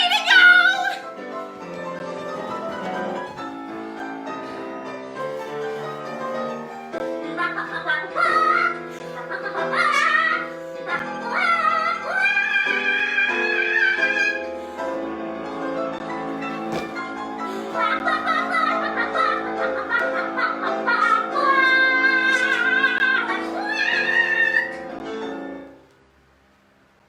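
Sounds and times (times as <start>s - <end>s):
woman singing wordlessly: 0.0s - 1.2s, 7.4s - 14.5s, 17.7s - 25.0s
piano chords: 0.0s - 25.8s.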